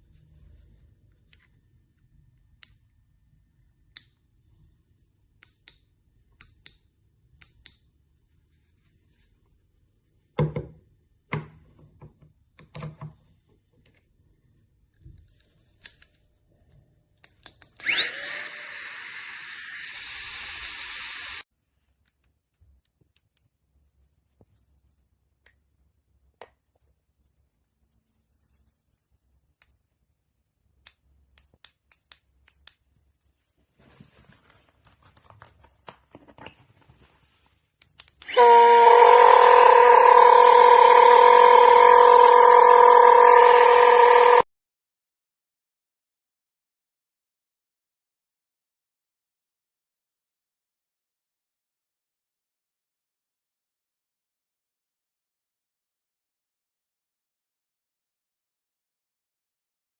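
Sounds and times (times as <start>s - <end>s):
electric air pump whining: 17.8s - 21.4s, 38.3s - 44.4s.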